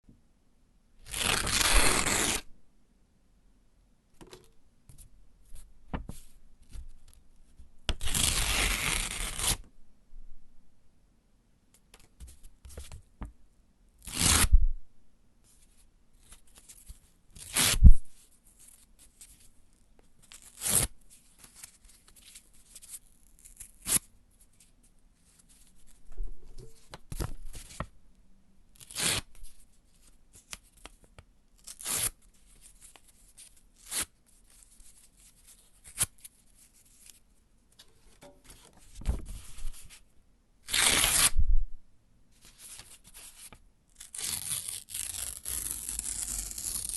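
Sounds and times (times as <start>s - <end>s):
paper ripping: 1.1s - 2.4s, 8.0s - 9.6s, 40.7s - 41.4s, 42.7s - 46.9s
paper rustling and crinkling: 37.8s - 40.0s.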